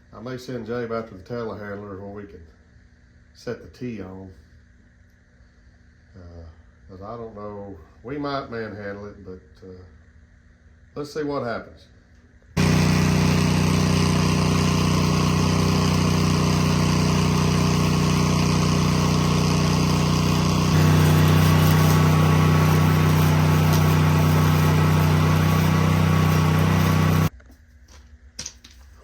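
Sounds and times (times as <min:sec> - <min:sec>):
welder engine running: 0:12.6 - 0:27.3.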